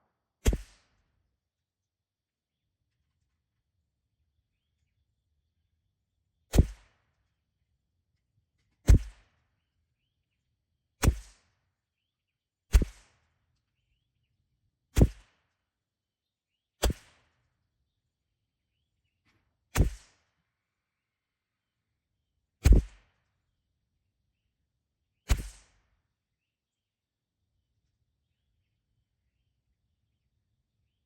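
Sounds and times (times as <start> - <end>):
rifle shots with echo: 0.5 - 0.8.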